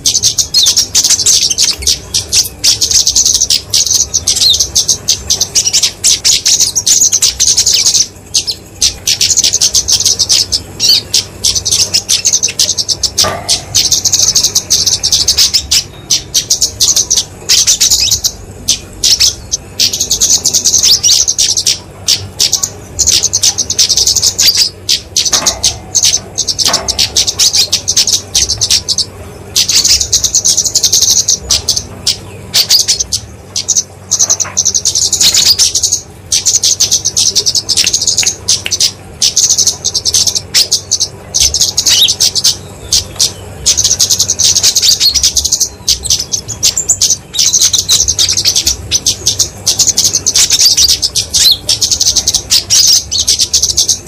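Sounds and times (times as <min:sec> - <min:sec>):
bird high-pitched chipping calls: 0:00.0 - 0:54.0.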